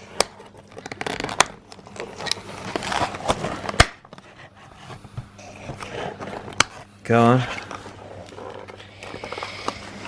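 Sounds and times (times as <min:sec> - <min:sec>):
cardboard and plastic rustling: 0:00.0 - 0:10.0
packaging clicks and snaps: 0:00.2 - 0:04.2.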